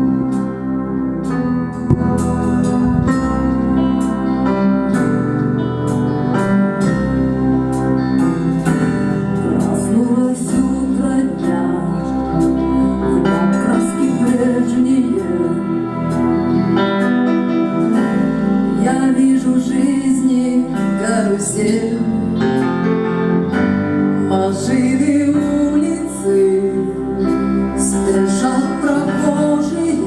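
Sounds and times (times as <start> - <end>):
bass guitar: 0.0 - 30.0
electric guitar: 0.0 - 30.0
keyboards: 0.0 - 30.0
drums with steady beat: 1.8 - 3.8.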